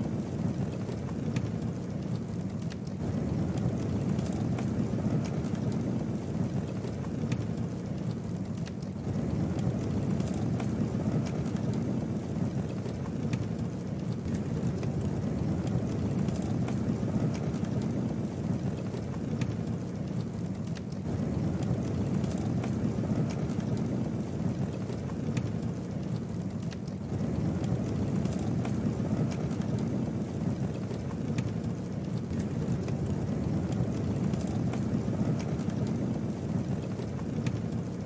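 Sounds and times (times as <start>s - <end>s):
low rumble of flame: 0.0s - 38.0s
wood crackling and popping: 0.0s - 38.0s.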